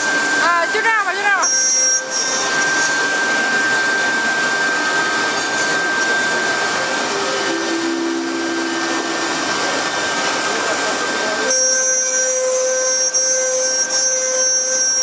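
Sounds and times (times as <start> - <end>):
router machine hissing and whining: 0.0 - 15.0
low hum: 2.0 - 11.4.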